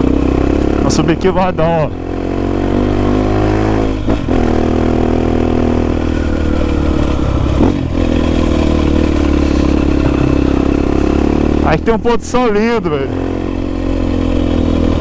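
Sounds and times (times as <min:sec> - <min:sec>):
motorcycle engine running hard: 0:00.0 - 0:15.0.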